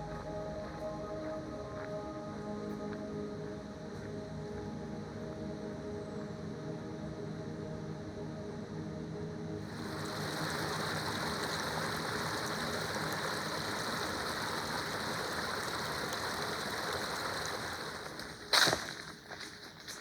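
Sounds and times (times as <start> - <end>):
brook running over stones: 9.6 - 20.0.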